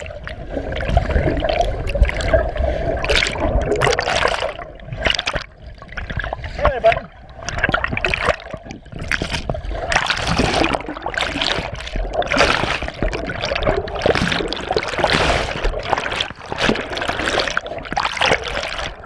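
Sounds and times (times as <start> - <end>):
water splashes: 0.0 - 19.0.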